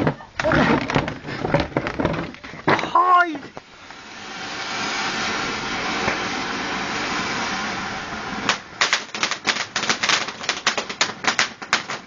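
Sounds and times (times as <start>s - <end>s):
firework hissing and crackling: 3.1s - 12.0s.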